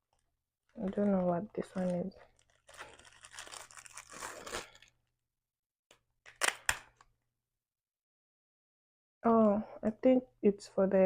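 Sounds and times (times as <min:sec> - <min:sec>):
plastic packaging rustling: 0:00.1 - 0:05.0
sharp plastic crackles: 0:00.1 - 0:05.0, 0:05.9 - 0:07.1.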